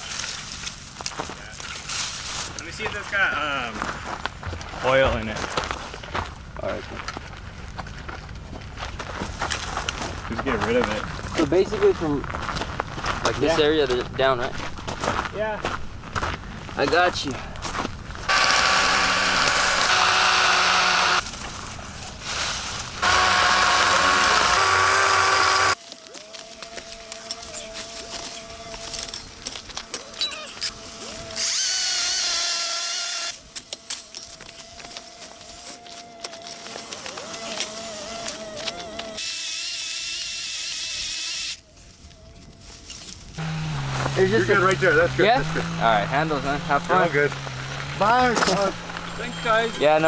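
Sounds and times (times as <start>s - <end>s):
electric chainsaw whine: 18.3s - 21.3s, 22.8s - 25.8s, 26.4s - 41.6s, 43.4s - 50.0s.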